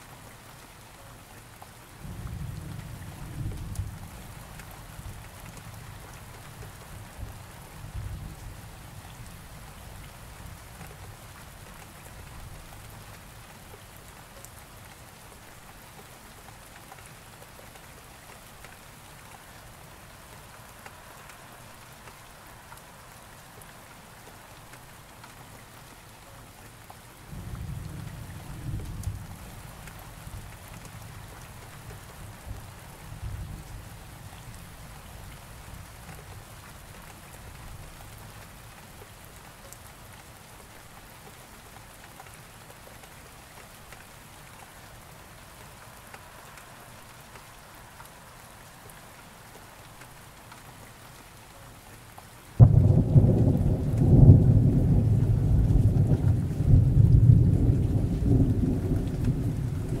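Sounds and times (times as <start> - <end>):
steady rain: 0.0 - 60.0
thunder rumbling: 52.6 - 60.0.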